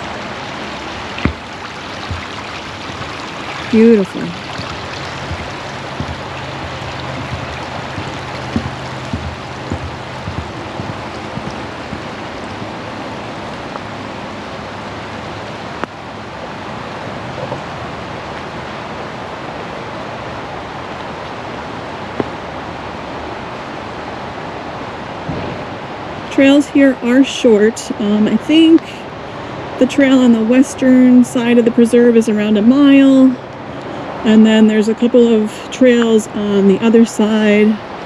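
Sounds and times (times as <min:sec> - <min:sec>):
creek water rushing: 0:00.0 - 0:26.9.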